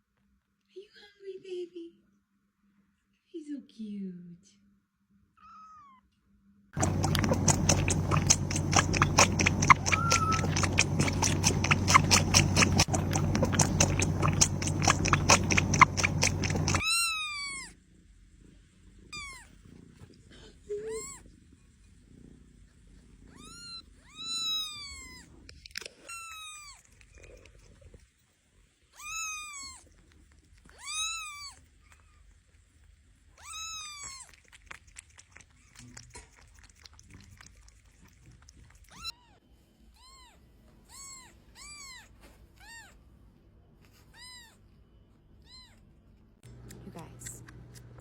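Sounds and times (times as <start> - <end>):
cat meowing: 5.4 - 6.0, 6.8 - 17.7, 23.3 - 25.3, 29.0 - 29.9, 33.4 - 34.4, 40.0 - 43.0, 44.0 - 44.6.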